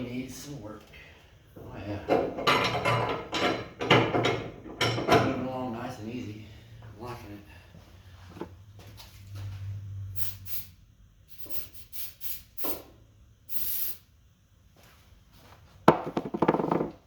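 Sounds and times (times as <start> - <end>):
short hissing puffs: 10.1 - 12.9, 13.5 - 14.1
ratchet wrench clicking: 11.3 - 12.8.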